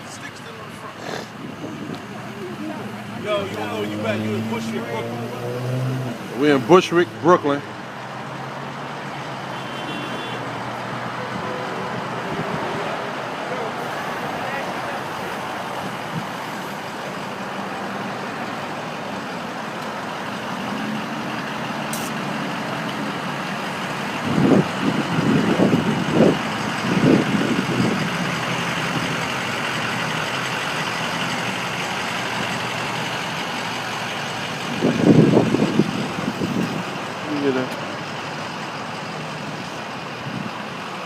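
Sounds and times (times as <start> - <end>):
passing traffic noise: 0.0 - 41.0.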